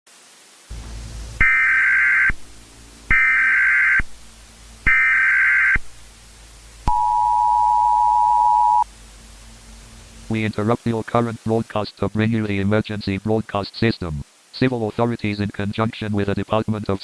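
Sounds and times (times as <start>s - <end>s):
screechy digital data tones: 1.4s - 2.4s, 3.1s - 4.1s, 4.8s - 5.8s
two-tone attention signal: 1.4s - 2.4s, 3.1s - 4.0s, 4.9s - 5.8s, 6.8s - 8.9s.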